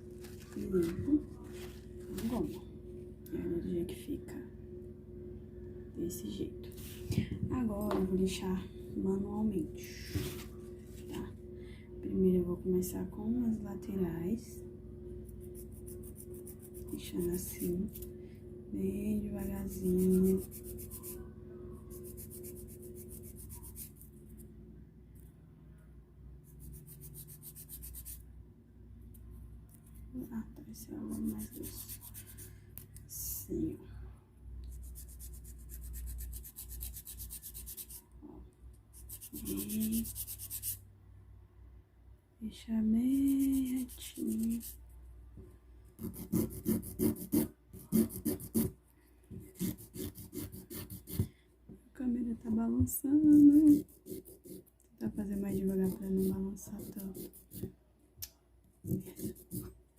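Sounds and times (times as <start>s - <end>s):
nail file rasping: 31.1s - 32.4s, 34.8s - 38.0s, 39.0s - 40.8s, 43.2s - 44.8s, 46.0s - 48.7s, 49.4s - 51.3s, 53.4s - 54.7s, 55.4s - 57.7s, 58.8s - 59.7s.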